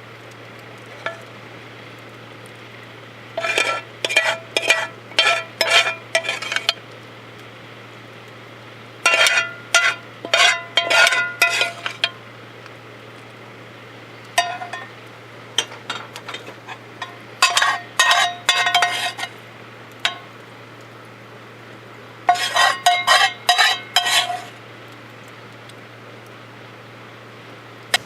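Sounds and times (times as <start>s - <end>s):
steady low hum: 0.0s - 28.0s
metal utensil clinking in pot: 3.4s - 6.8s, 9.1s - 12.2s, 14.4s - 14.9s, 15.6s - 19.3s, 20.0s - 20.3s, 22.3s - 24.5s.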